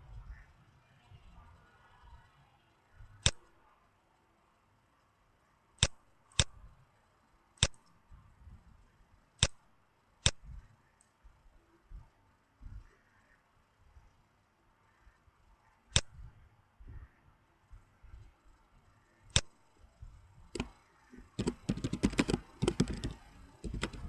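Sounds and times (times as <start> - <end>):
computer mouse clicking: 3.1 - 3.6, 7.6 - 8.0, 10.2 - 11.2, 15.9 - 16.3, 18.1 - 24.0.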